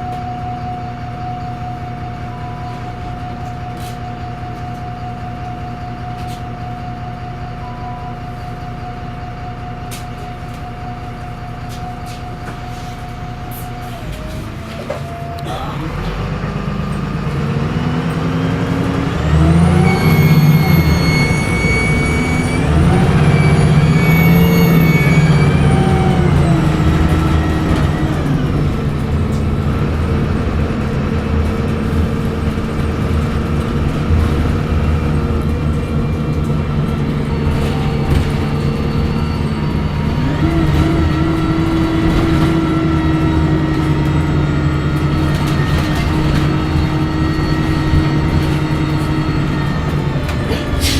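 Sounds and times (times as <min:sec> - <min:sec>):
bus diesel engine accelerating: 0:00.0 - 0:50.9
turbo whine: 0:19.2 - 0:31.1.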